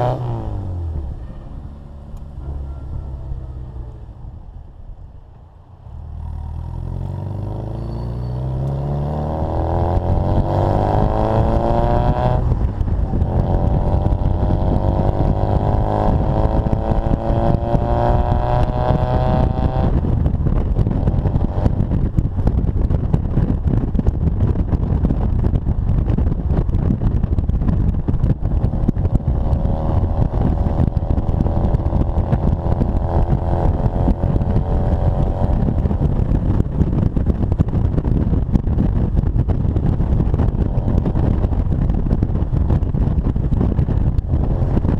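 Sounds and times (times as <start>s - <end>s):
wind and road noise: 0.0s - 44.9s
car engine accelerating through gears: 6.0s - 23.8s.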